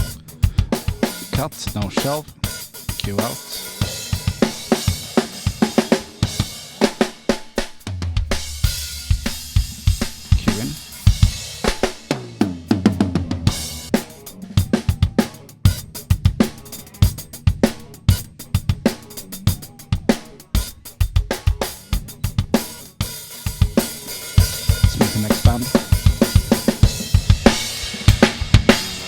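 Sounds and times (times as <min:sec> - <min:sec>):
drum kit groove: 0:00.0 - 0:29.0.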